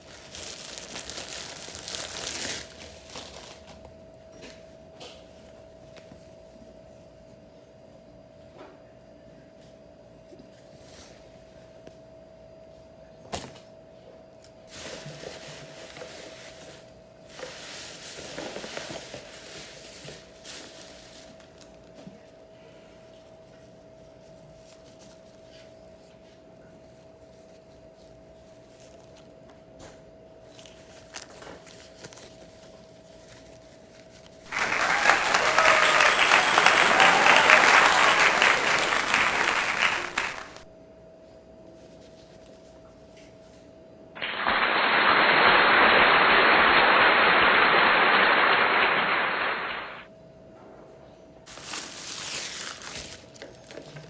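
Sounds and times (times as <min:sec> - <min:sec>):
packaging rustling: 0:00.0 - 0:03.8, 0:14.7 - 0:21.7, 0:30.6 - 0:34.8, 0:38.6 - 0:40.7, 0:51.5 - 0:54.0
faint steady hum: 0:00.0 - 0:54.0
crowd applause: 0:34.5 - 0:40.7, 0:44.2 - 0:50.0.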